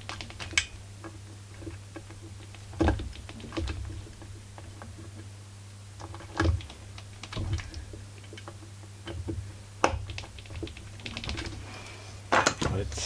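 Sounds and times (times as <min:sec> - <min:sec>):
steady low hum: 0:06.6 - 0:13.0.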